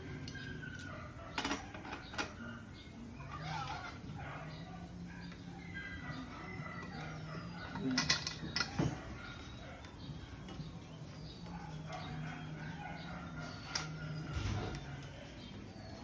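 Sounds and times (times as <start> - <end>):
metal tools clicking and knocking: 0.2 - 2.4, 6.8 - 9.5, 13.5 - 15.1.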